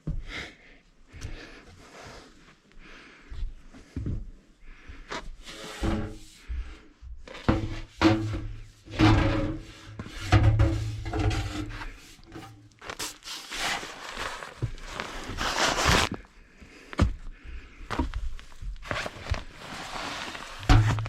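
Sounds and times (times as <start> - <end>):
rubbing and scraping by hand: 7.3 - 16.3, 18.0 - 21.0.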